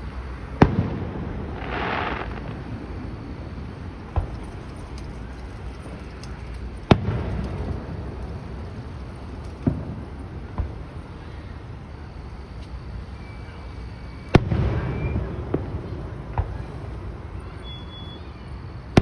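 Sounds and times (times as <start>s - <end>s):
firework hiss: 0.0s - 19.0s
firework shells bursting: 0.5s - 10.8s.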